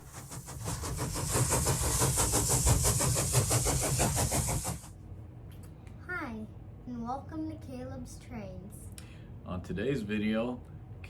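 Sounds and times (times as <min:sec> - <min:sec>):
steam hiss: 0:00.0 - 0:04.9
steam locomotive chuffing: 0:00.0 - 0:04.9.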